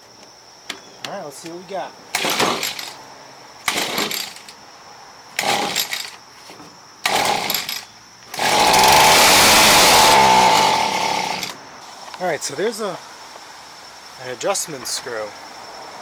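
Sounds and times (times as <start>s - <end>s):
recoil starter pulls: 2.2s - 2.9s, 3.6s - 4.5s, 7.0s - 11.6s
two-stroke engine running fast: 8.4s - 11.5s.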